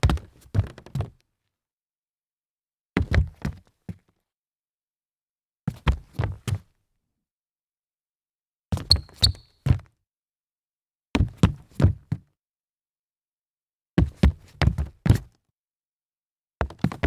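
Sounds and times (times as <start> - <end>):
rubber sole squeaks: 8.8 - 9.7.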